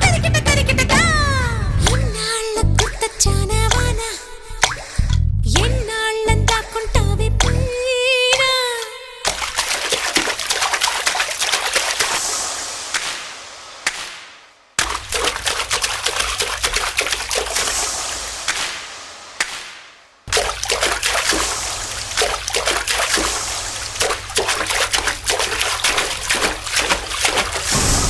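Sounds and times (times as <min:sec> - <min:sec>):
low rumble: 0:00.0 - 0:04.1, 0:05.0 - 0:07.8, 0:27.7 - 0:28.0
drop splashes: 0:02.7 - 0:03.9, 0:04.6 - 0:05.7, 0:06.4 - 0:07.6, 0:08.3 - 0:28.0
rain falling: 0:09.3 - 0:28.0.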